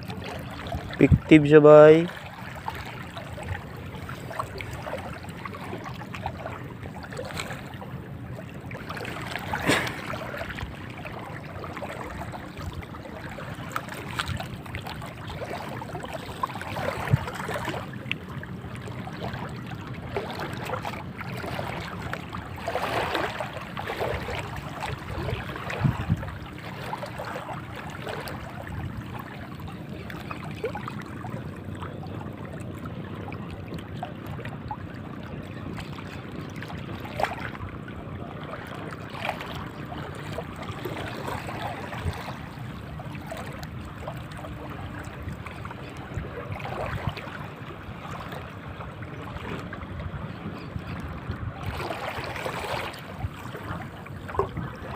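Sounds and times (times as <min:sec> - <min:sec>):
small knocks and splashes: 0:00.0 - 0:07.8, 0:08.7 - 0:18.2
sea water lapping: 0:00.0 - 0:54.9.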